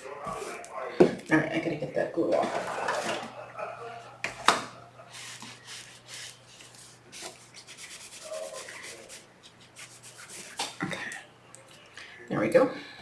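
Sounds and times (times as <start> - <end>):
scratchy rubbing on paper: 5.1 - 10.8.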